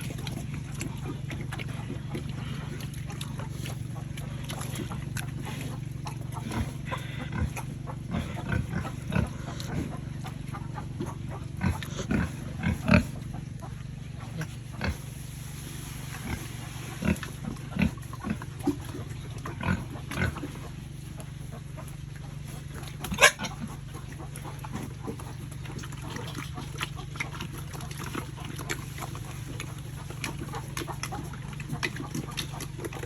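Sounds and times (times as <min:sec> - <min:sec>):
pigs grunting: 0:00.0 - 0:33.0.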